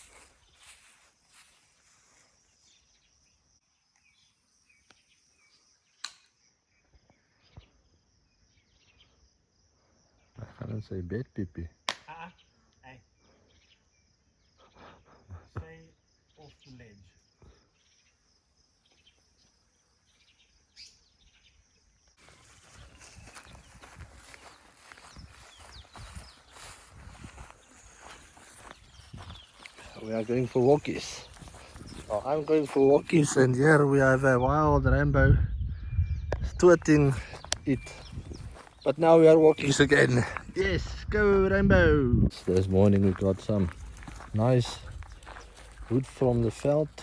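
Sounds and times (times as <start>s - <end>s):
birds chirping: 0.0s - 9.5s, 10.1s - 47.0s
sharp click: 6.0s - 6.3s
high insect trill: 7.8s - 35.1s.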